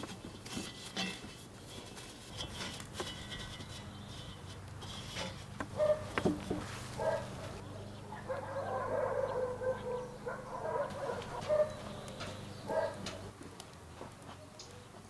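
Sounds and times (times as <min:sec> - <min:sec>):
chickens calling: 0:05.6 - 0:13.3.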